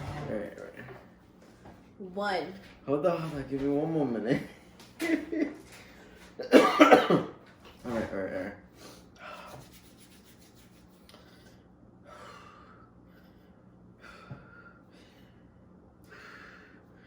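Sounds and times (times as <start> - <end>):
low room hum: 0.0 - 17.0
soft breathing: 11.1 - 17.0.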